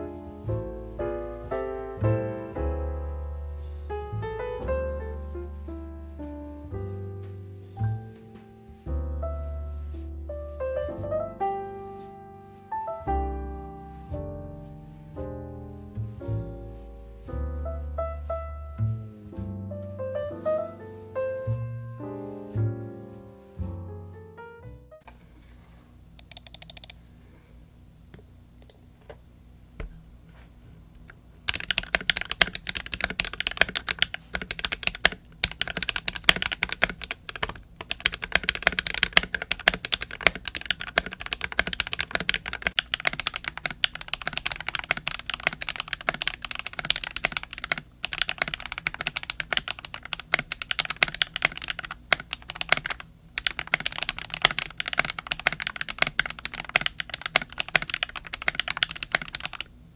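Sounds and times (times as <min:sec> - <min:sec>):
typing on a mechanical keyboard: 0:31.5 - 0:59.7.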